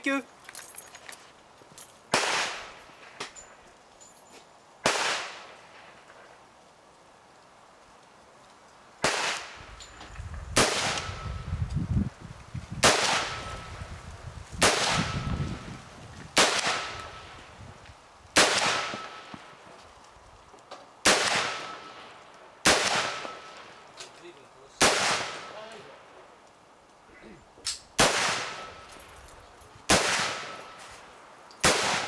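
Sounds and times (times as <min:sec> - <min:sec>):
rifle shots echoing: 0:02.1 - 0:02.8, 0:04.8 - 0:05.6, 0:09.0 - 0:09.6, 0:10.6 - 0:11.2, 0:12.8 - 0:13.7, 0:14.6 - 0:15.2, 0:16.4 - 0:17.2, 0:18.4 - 0:19.3, 0:21.0 - 0:22.0, 0:22.6 - 0:23.8, 0:24.8 - 0:25.6, 0:28.0 - 0:28.9, 0:29.9 - 0:30.8, 0:31.6 - 0:32.0.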